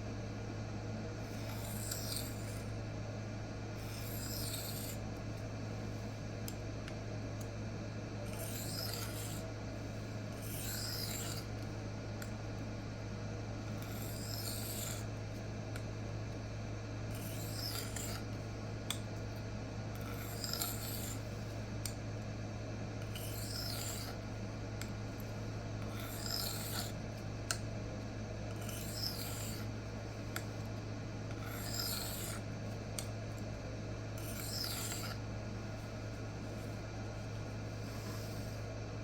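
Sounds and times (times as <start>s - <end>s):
steady low hum: 0.0s - 39.0s
knife scraping on sharpening plate: 1.4s - 2.6s, 3.8s - 5.0s, 8.3s - 9.4s, 10.4s - 11.4s, 23.2s - 24.1s, 26.0s - 27.0s, 28.6s - 29.7s, 31.4s - 32.4s, 34.2s - 35.2s.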